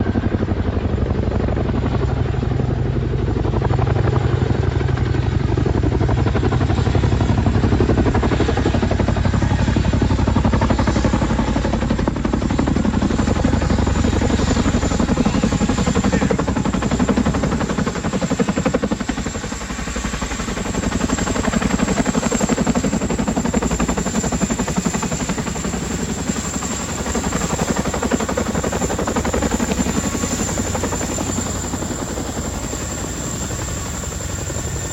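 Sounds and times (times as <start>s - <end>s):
helicopter rotor chop: 0.0s - 34.9s
high turbine whine: 12.8s - 34.9s.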